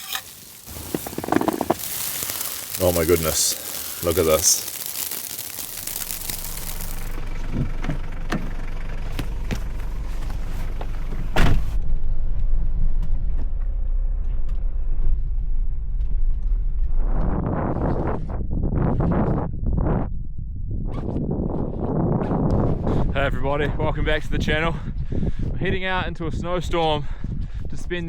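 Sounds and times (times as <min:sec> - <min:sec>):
rough crunching noises: 0:00.0 - 0:11.8
vehicle engine idling: 0:05.4 - 0:11.8.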